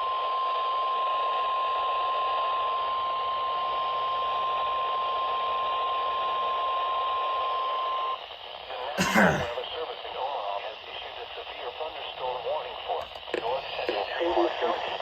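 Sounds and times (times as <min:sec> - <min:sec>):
radio static hiss: 0:08.5 - 0:15.0.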